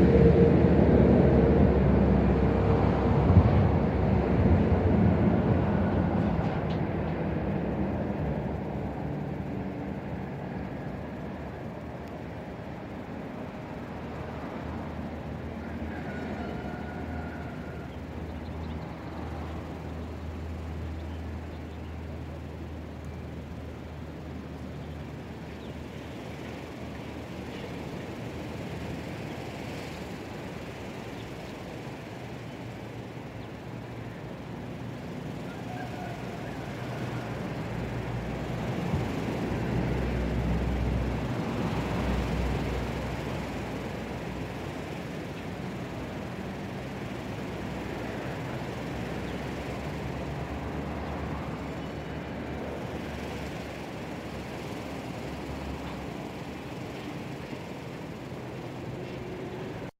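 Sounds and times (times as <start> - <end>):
gusty wind buffeting microphone: 0.0 - 8.8.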